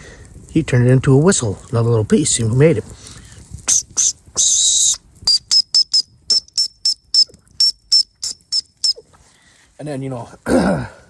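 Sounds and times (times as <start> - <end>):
shrill whistle toots: 3.7 - 9.2.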